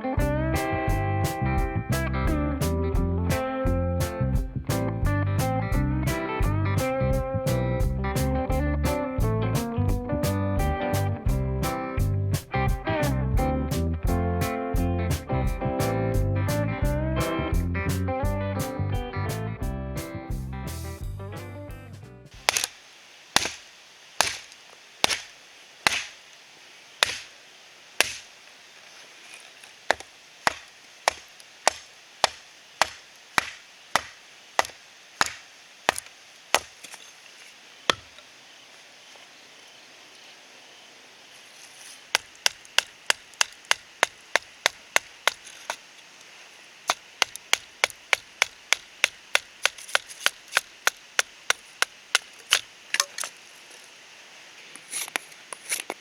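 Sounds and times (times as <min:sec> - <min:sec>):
wood chopping strikes: 0:22.4 - 0:26.3, 0:27.0 - 0:27.4, 0:28.0 - 0:28.4, 0:29.8 - 0:37.0, 0:37.9 - 0:38.2, 0:42.1 - 0:45.9, 0:46.8 - 0:53.4.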